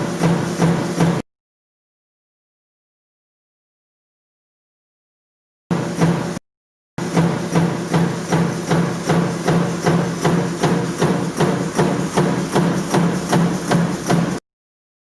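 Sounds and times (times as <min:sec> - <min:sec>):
stamping press knocking: 0:07.0 - 0:14.4.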